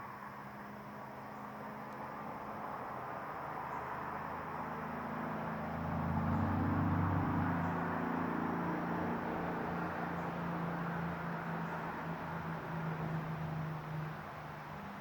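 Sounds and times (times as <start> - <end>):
vehicle passing: 3.4 - 15.0.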